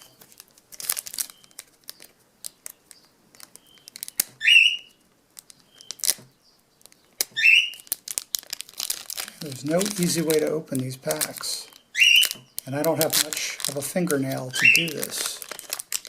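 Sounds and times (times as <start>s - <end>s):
wrappers crinkling and tearing: 0.0s - 4.4s, 5.3s - 16.0s.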